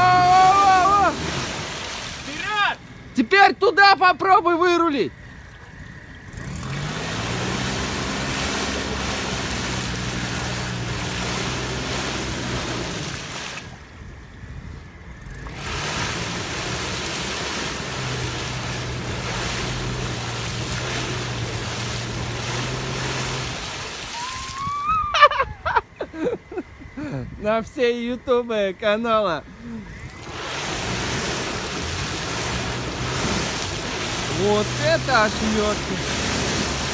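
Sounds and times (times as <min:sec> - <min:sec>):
car engine revving high: 0:00.0 - 0:03.1, 0:06.2 - 0:13.5, 0:15.2 - 0:24.3, 0:30.1 - 0:36.9
tyres churning and spraying mud: 0:00.0 - 0:25.1, 0:25.8 - 0:36.9.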